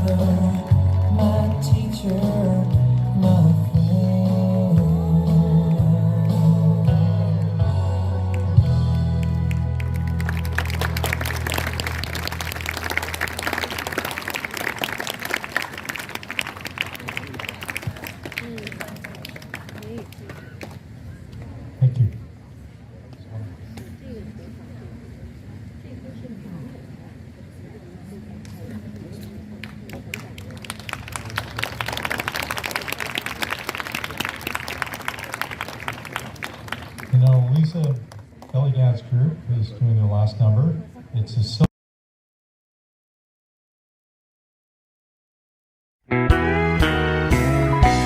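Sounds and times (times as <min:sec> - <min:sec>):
audience clapping: 0:00.0 - 0:02.3, 0:08.2 - 0:20.9, 0:29.6 - 0:38.6.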